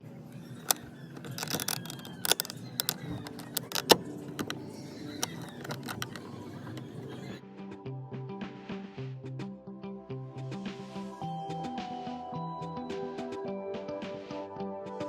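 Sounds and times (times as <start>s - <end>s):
low motor hum: 0.0s - 7.4s
side mirror clicking: 0.6s - 7.4s.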